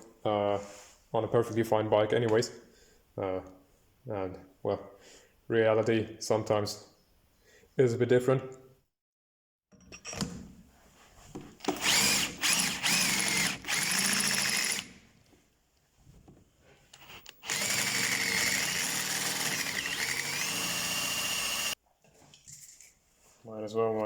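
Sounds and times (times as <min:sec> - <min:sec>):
electric drill boring metal: 0:11.6 - 0:14.9, 0:17.0 - 0:21.8.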